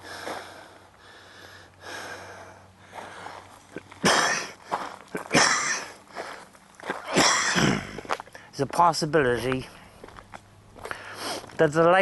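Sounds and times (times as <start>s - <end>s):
person breathing out hard through nose: 0.0s - 3.4s, 10.8s - 11.5s.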